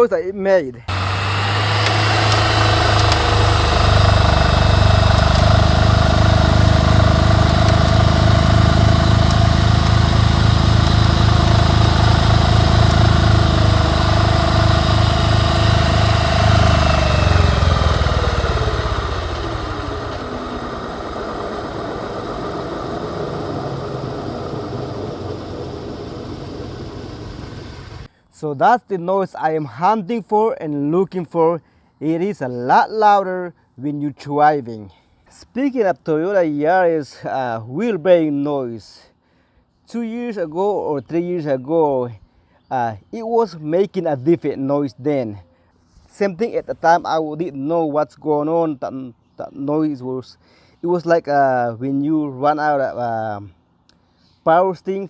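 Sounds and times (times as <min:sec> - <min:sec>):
wheel bearing humming: 0:00.9 - 0:28.1.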